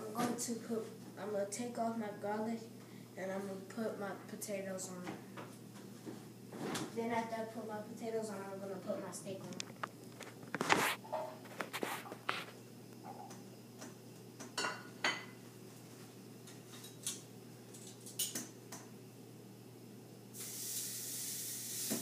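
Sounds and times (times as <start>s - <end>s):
steak sizzling in a pan: 20.4s - 22.0s.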